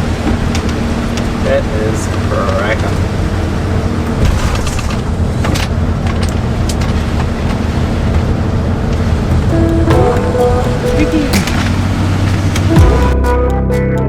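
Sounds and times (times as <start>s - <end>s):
road noise: 0.0s - 13.8s
bus engine drone: 0.0s - 14.0s
rattles and knocks: 4.0s - 10.4s, 11.3s - 12.7s.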